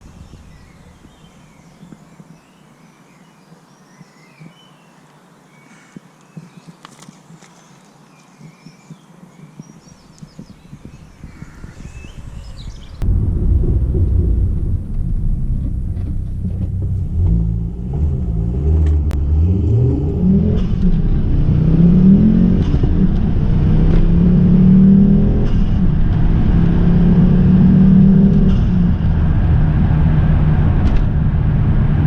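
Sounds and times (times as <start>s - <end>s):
car engine accelerating: 13.0s - 32.0s.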